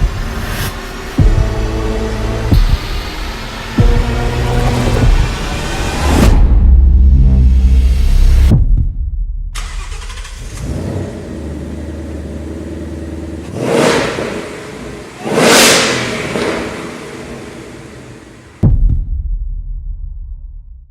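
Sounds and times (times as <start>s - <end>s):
car engine revving: 0.0s - 8.5s, 9.6s - 18.6s
car engine starting and idling: 1.0s - 8.4s, 9.6s - 18.6s.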